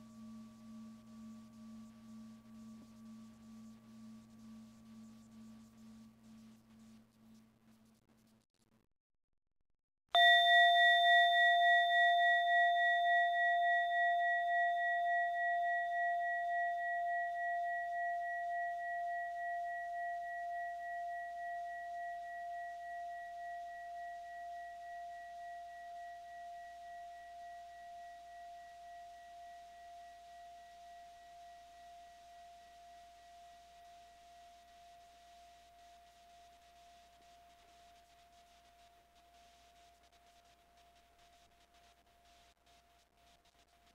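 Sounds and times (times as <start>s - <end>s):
bell-like chime ringing: 10.2s - 17.1s.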